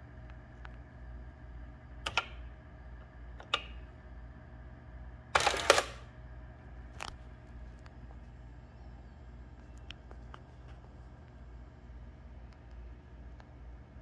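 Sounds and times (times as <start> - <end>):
office machine motor hum: 0.0 - 14.0
sharp mechanical clicks: 2.0 - 2.4, 5.4 - 6.0.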